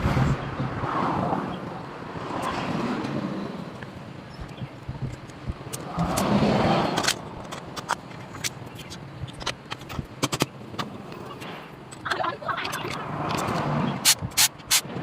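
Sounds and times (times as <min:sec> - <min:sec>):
sharp metallic clicks and taps: 0:03.8 - 0:06.3, 0:07.0 - 0:10.9.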